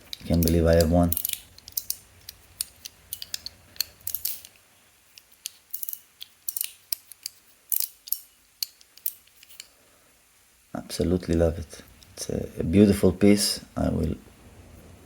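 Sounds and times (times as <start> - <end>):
metal fidget toy clicking: 0.0 - 4.5, 5.2 - 9.7.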